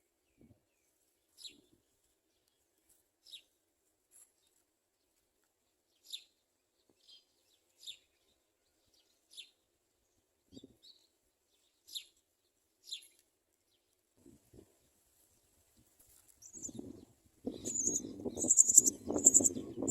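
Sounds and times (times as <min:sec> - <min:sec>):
sparrow chirping: 0:05.9 - 0:06.4, 0:07.0 - 0:09.6, 0:10.5 - 0:12.2, 0:12.8 - 0:13.2, 0:16.4 - 0:19.9.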